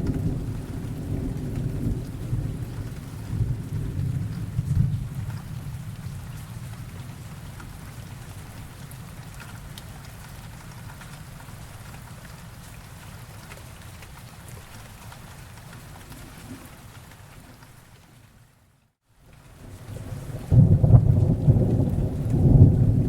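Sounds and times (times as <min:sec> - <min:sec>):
thunder rumble: 0:00.0 - 0:07.8, 0:19.6 - 0:23.0
steady rain: 0:00.0 - 0:23.0.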